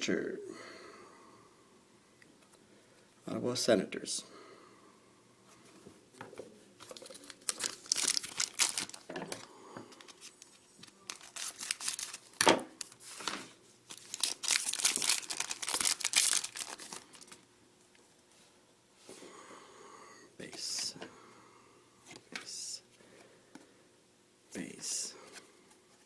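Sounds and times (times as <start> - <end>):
wrapper crinkling and tearing: 6.8 - 13.3, 13.9 - 17.4.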